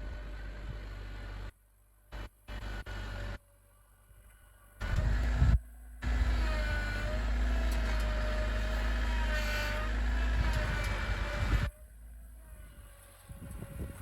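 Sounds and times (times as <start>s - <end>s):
tractor engine running hard: 0.0s - 1.5s, 4.6s - 14.0s.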